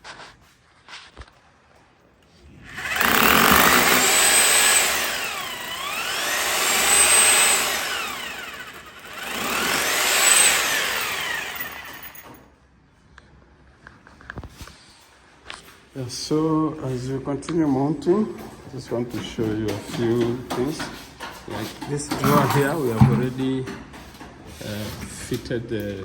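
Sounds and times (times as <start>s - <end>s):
electric power drill running: 2.7s - 12.4s.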